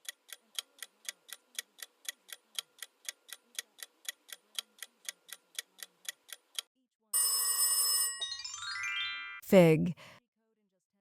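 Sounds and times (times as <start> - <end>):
clock ticking: 0.0 - 6.7.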